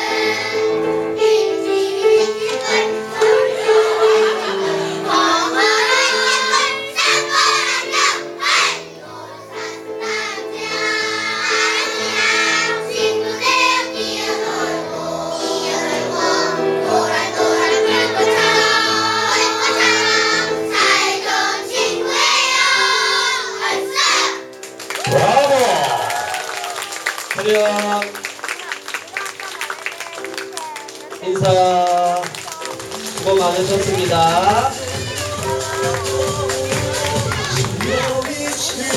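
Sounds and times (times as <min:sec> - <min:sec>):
children's choir singing: 0:00.0 - 0:24.5, 0:34.2 - 0:38.9
instrumental accompaniment: 0:26.8 - 0:38.9.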